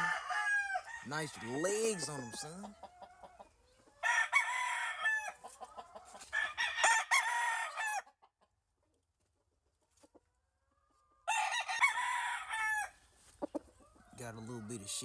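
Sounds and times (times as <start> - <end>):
rooster crowing: 0.0 - 3.4, 4.0 - 5.4, 6.3 - 8.1, 11.2 - 13.0.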